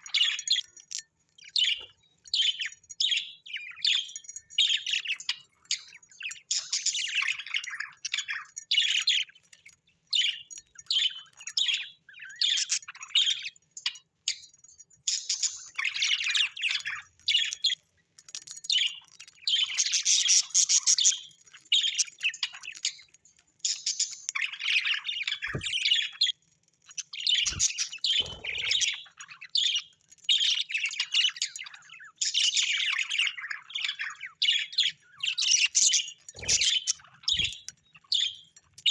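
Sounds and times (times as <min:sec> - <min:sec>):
birds chirping and chattering: 0:00.0 - 0:38.9
bird squawks: 0:36.4 - 0:37.6.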